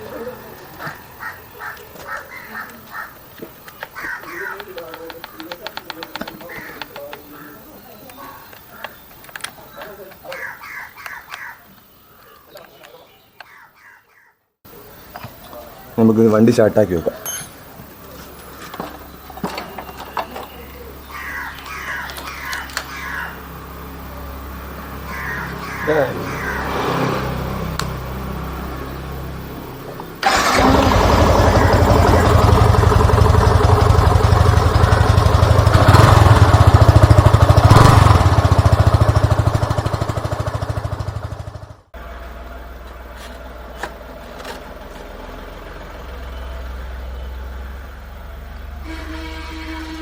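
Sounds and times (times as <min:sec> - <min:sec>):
motorcycle engine starting and running: 0:22.0 - 0:48.8.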